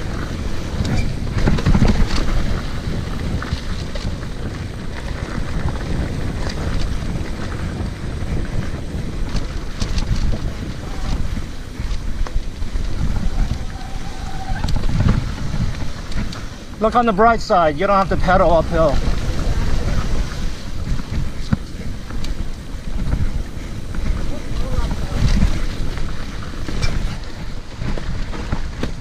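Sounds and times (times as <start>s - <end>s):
bike rattling over bumps: 0.0s - 29.0s
wind rushing over microphone: 0.0s - 29.0s.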